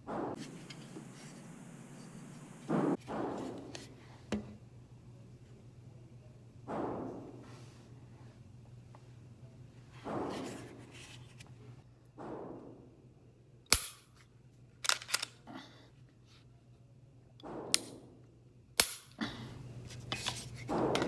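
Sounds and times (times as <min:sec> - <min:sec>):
rubbing and sliding sounds: 0:00.0 - 0:04.2, 0:09.9 - 0:11.8, 0:19.8 - 0:21.0
pistol mechanical clicks: 0:13.7 - 0:14.2, 0:14.8 - 0:15.4, 0:18.8 - 0:19.2.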